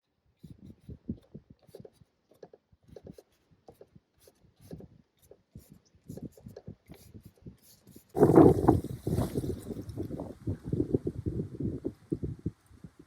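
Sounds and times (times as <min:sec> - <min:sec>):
painting tool scratching canvas: 0:00.4 - 0:09.5.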